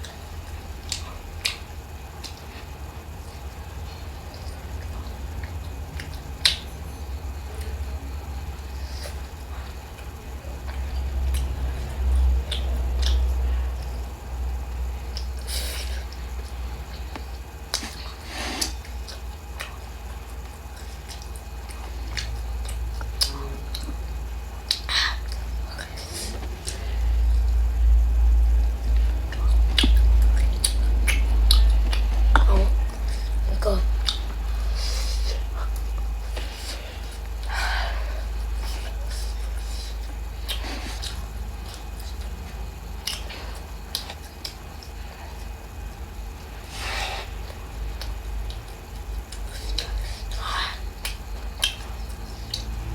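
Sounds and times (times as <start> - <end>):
wet chewing mouth clicks: 0.0 - 3.4, 10.7 - 14.0, 15.1 - 26.8, 28.9 - 37.4, 38.6 - 46.6, 47.4 - 52.9
steady low hum: 0.0 - 52.9.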